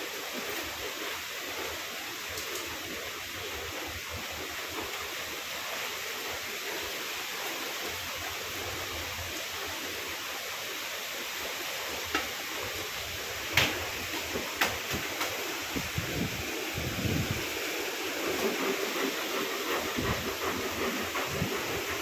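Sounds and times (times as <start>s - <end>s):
steady rushing noise: 12.7s - 22.0s.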